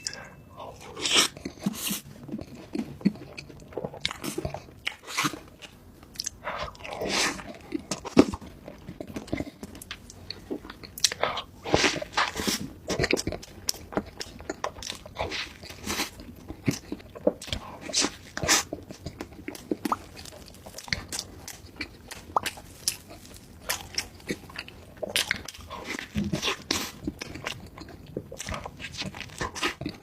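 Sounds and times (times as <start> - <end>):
chewing: 0.0 - 30.0
crunchy bites: 16.7 - 30.0.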